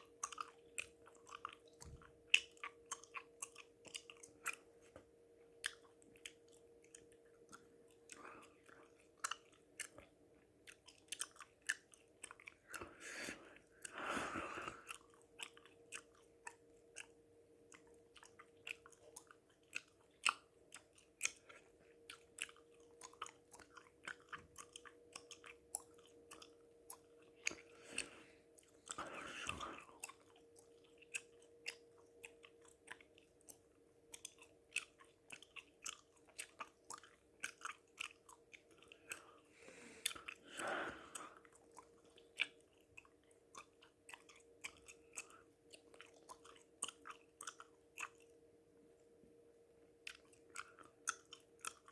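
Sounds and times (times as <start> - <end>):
gum chewing mouth clicks: 0.0 - 48.4, 50.0 - 51.9
heavy breaths: 12.7 - 14.9, 27.7 - 29.9, 39.2 - 41.4.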